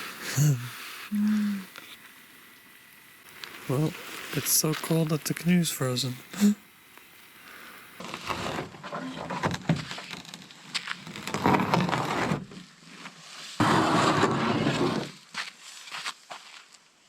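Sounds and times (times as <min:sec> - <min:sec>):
scraping a canoe: 0:08.0 - 0:12.6, 0:13.6 - 0:15.3.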